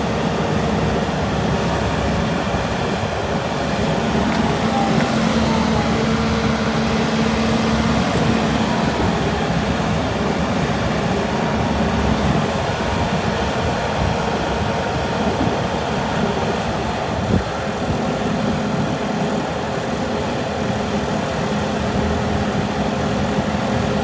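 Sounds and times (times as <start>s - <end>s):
diesel engine running: 0.0s - 19.2s.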